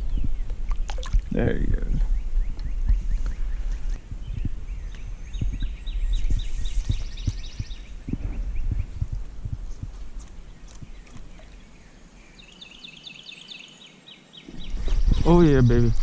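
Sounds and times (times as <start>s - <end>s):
bird chirping: 0.0s - 9.2s, 10.2s - 16.0s
low thumps: 0.0s - 11.5s
steady low rumble: 0.0s - 11.9s.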